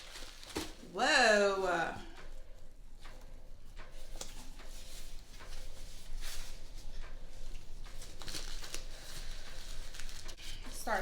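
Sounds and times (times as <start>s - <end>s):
packaging rustling and crinkling: 0.0s - 1.0s, 4.2s - 11.0s.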